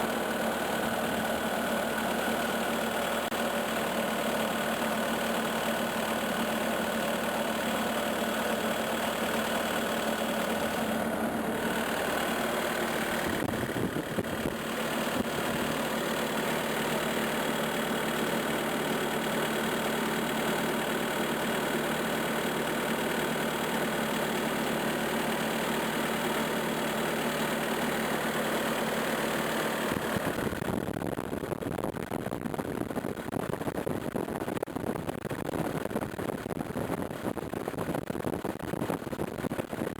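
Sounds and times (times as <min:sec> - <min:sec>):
skid steer engine idling: 0:00.0 - 0:30.7.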